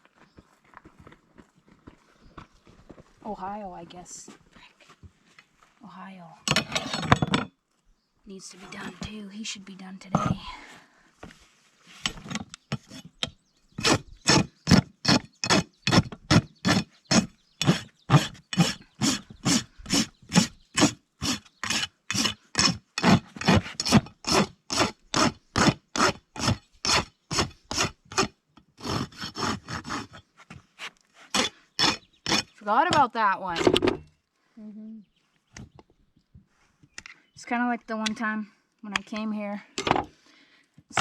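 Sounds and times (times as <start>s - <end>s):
rasp filing a hoof: 11.3s - 33.9s.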